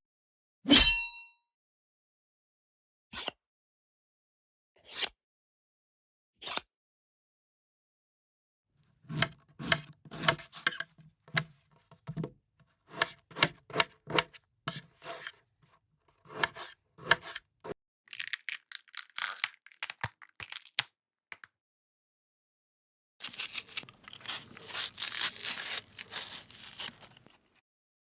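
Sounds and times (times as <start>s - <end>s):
knife cutting on a cutting board: 9.0s - 15.4s, 16.1s - 17.8s, 23.2s - 27.6s
crisp crunching knife cuts: 23.2s - 27.6s.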